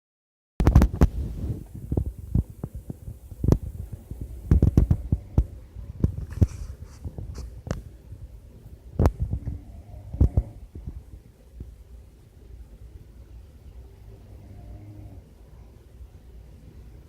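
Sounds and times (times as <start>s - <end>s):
person snoring: 14.4s - 15.3s.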